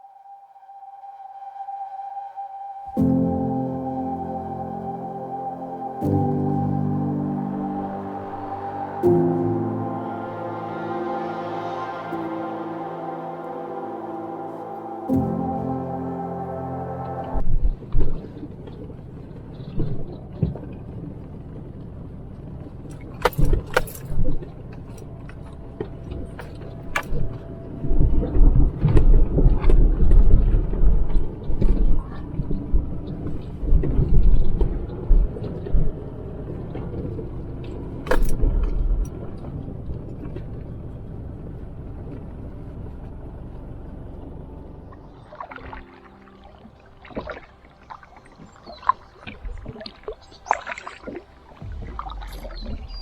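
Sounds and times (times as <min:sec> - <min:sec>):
car driving on rough road: 0:34.8 - 0:45.1.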